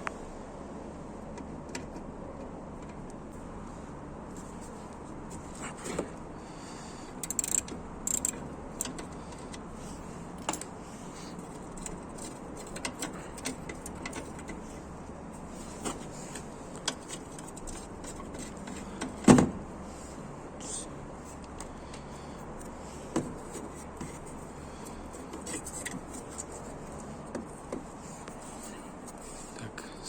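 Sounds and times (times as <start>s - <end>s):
hand tools clicking on metal: 7.2s - 9.6s.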